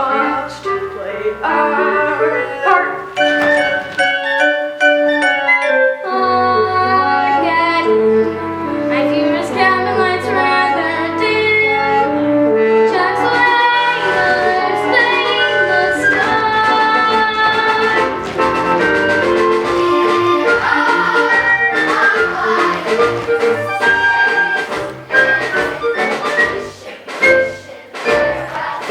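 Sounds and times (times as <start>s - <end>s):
voices singing: 0.0s - 3.7s, 12.9s - 28.9s
instrumental accompaniment: 0.0s - 28.9s.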